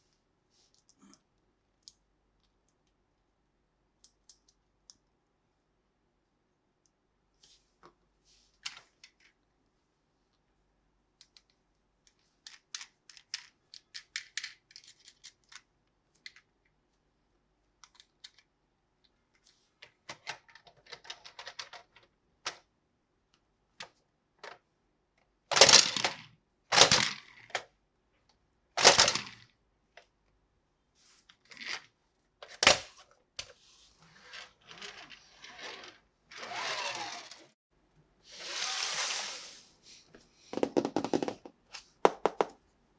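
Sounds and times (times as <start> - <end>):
plastic toy parts clicking: 11.2 - 16.5, 25.5 - 27.6, 28.8 - 29.4.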